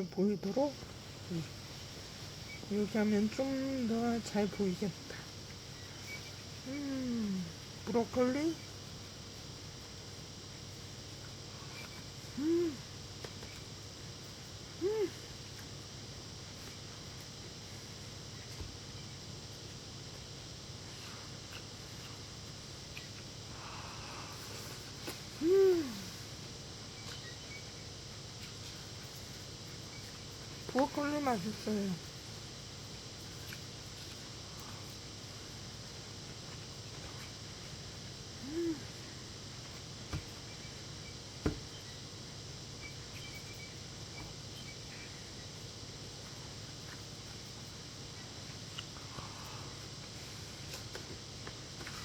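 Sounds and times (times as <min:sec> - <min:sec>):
low background hum: 0:00.0 - 0:52.0
person humming mmm: 0:06.7 - 0:07.6, 0:12.3 - 0:12.9, 0:14.8 - 0:15.2, 0:25.3 - 0:26.3, 0:38.4 - 0:39.0.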